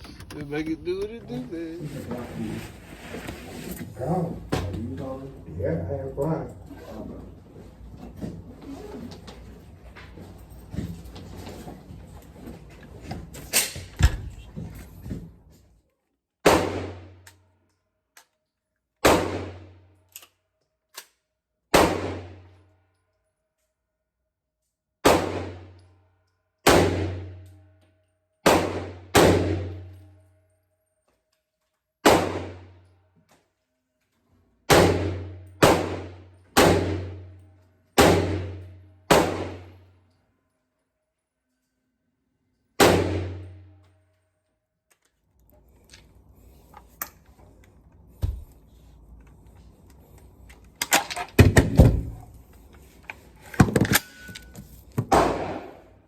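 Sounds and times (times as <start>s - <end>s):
gunshots: 16.4s - 17.1s, 19.0s - 19.7s, 21.7s - 22.4s, 25.0s - 25.7s, 26.7s - 27.4s, 28.4s - 29.8s, 32.0s - 32.7s, 34.7s - 37.3s, 38.0s - 39.8s, 42.8s - 43.5s, 55.1s - 55.9s.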